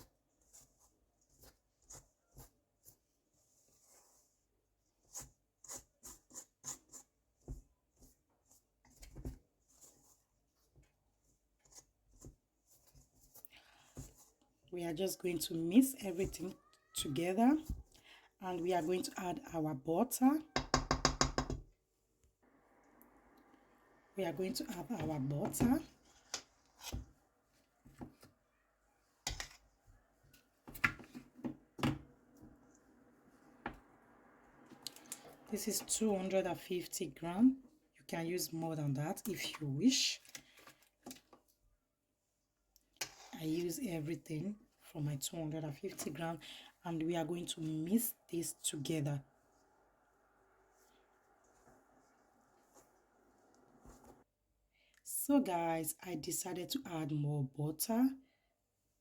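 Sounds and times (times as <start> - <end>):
flour stirred in a bowl: 0.0 - 22.2, 23.2 - 54.3
utensil knocking against cookware: 20.6 - 21.7.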